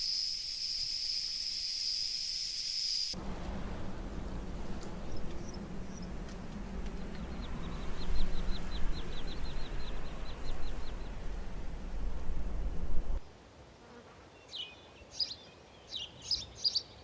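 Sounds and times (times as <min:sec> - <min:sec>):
background rumble and hiss: 0:03.2 - 0:13.2.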